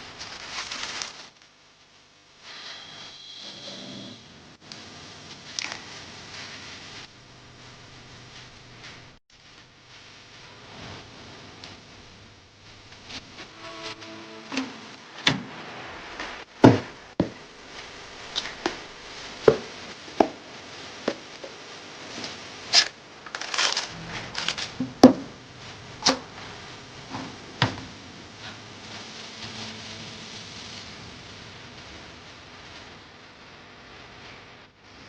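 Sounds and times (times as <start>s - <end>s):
rustling clicks: 22.2s - 24.8s.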